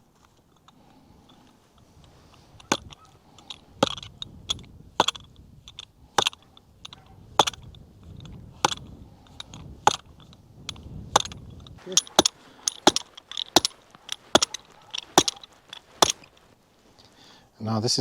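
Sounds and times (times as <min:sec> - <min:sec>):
fence post hammer blows: 0:02.2 - 0:16.5.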